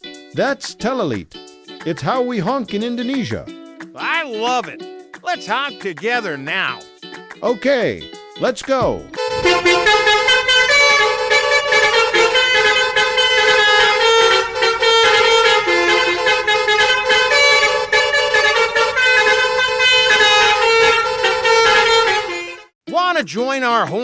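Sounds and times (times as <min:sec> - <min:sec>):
bus horn honking: 0:09.2 - 0:22.8
multi-tone bus horn melody: 0:09.2 - 0:22.8.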